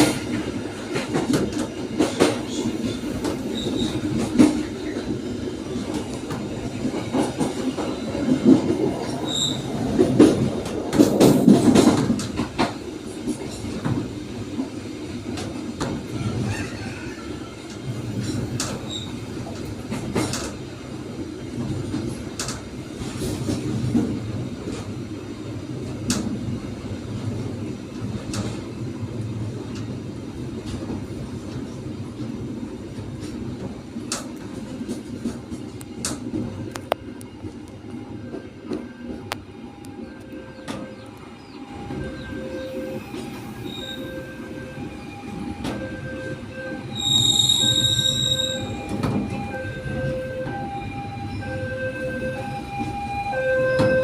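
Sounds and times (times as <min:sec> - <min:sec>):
wheels clacking over rail joints: 0:00.0 - 0:16.5, 0:17.7 - 0:20.6
train wheels rumbling on rails: 0:00.0 - 0:54.0
high wheel squeaks: 0:02.5 - 0:04.2, 0:09.2 - 0:09.8, 0:41.7 - 0:45.5, 0:46.7 - 0:49.5.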